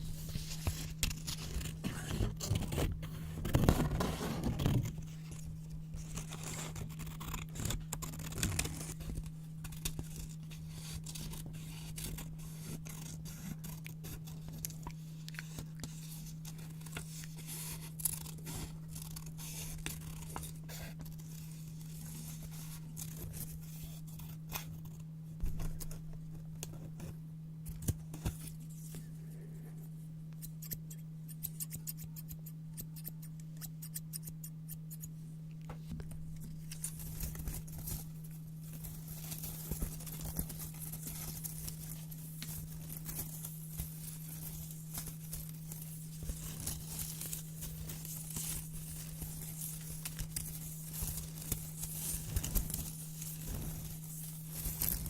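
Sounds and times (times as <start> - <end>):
steady low hum: 0.0 - 55.0
scissors snipping paper: 0.6 - 21.5, 38.8 - 55.0.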